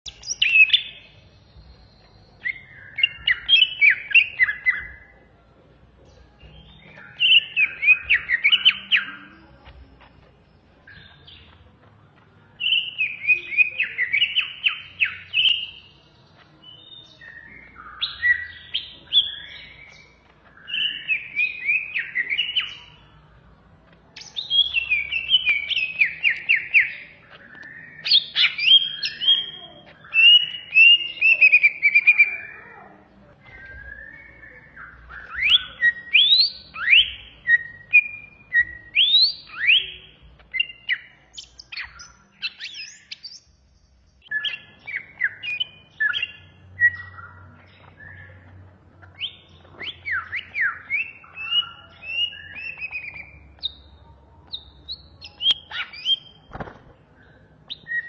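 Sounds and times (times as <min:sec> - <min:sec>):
bird singing chattering notes: 0:00.0 - 0:05.3, 0:05.9 - 0:58.0.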